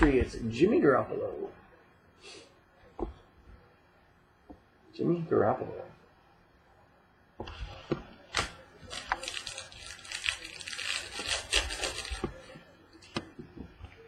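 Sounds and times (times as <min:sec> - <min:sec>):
plastic packaging rustling: 0:08.4 - 0:13.2.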